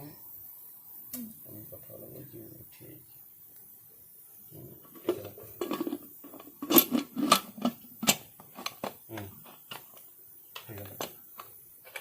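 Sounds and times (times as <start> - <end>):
metal pot clinks and knocks: 4.9 - 8.9.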